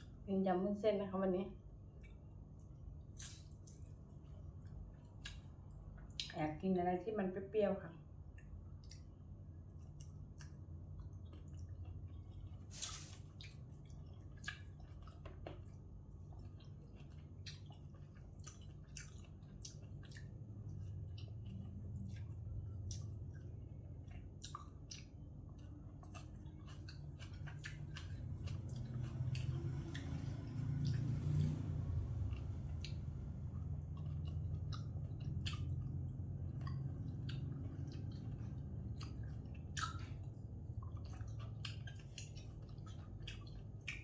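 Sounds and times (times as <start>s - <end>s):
steady low hum: 0.0s - 44.0s
person chewing wet food: 1.8s - 6.3s, 8.1s - 44.0s
wet mouth clicks and smacks: 36.6s - 44.0s.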